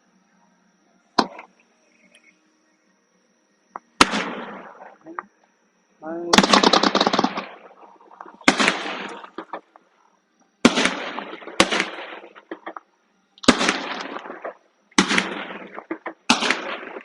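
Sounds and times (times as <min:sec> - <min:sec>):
fireworks bangs with crackle: 0:04.0 - 0:05.0, 0:06.4 - 0:09.7, 0:10.6 - 0:12.8, 0:13.4 - 0:17.0.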